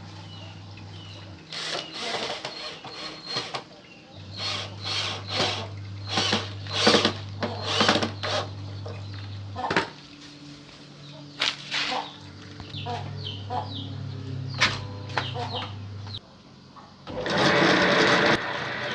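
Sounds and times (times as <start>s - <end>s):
disc sander motor humming: 12.8s - 16.2s.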